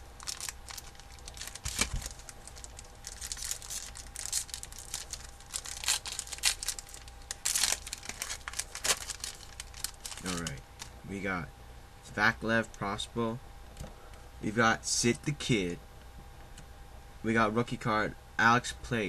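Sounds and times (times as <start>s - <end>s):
cards and foil wrapper crinkling: 0.0s - 10.9s.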